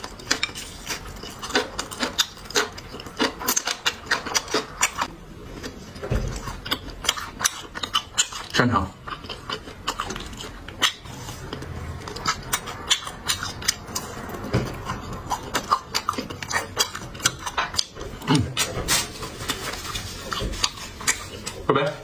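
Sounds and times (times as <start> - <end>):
chewing food wet crunches: 0.0 - 21.7.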